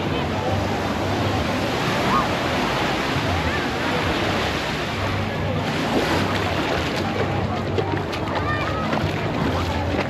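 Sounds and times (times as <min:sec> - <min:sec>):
faint voices: 0:00.0 - 0:10.0
surf on a beach: 0:00.0 - 0:10.0.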